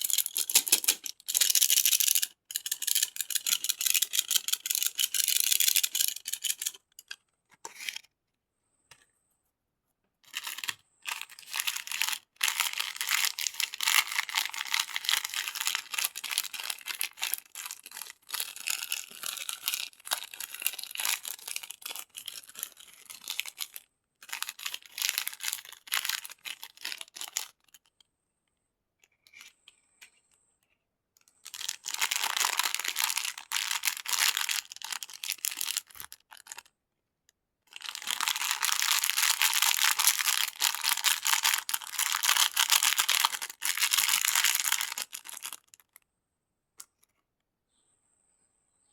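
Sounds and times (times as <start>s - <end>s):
candy wrappers crinkling: 0.0s - 7.2s, 10.2s - 27.9s, 31.3s - 36.7s, 37.7s - 46.0s.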